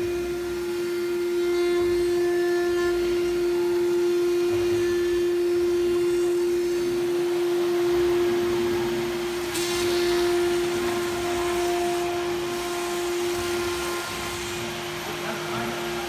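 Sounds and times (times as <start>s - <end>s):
router spindle whine: 0.0s - 16.0s.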